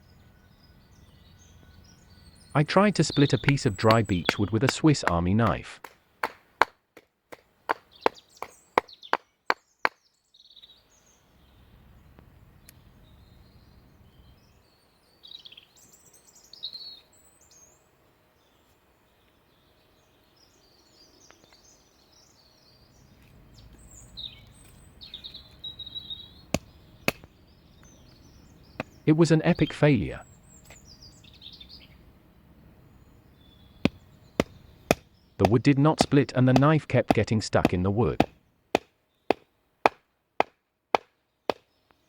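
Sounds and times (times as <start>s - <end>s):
birds chirping: 0.0s - 5.9s, 7.6s - 39.9s, 41.0s - 42.0s
low outdoor rumble: 22.9s - 38.8s.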